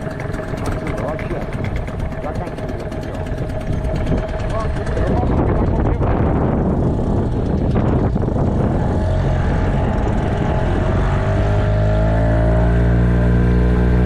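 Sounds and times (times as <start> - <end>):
wind buffeting microphone: 0.0 - 14.0
droning music track: 6.9 - 14.0.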